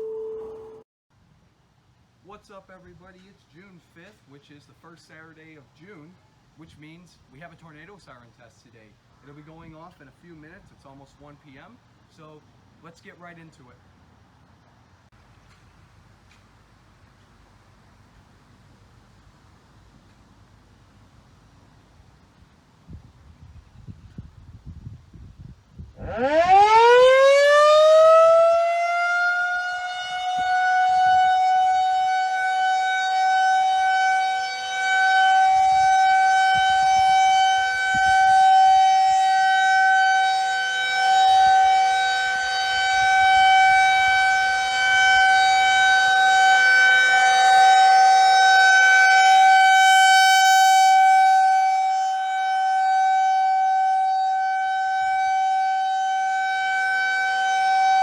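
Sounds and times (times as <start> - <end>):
rotating siren steady tone: 0.0 - 0.8, 26.0 - 58.0.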